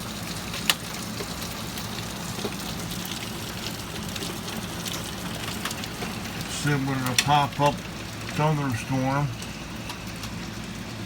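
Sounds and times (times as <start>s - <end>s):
steady rain: 0.0s - 11.0s.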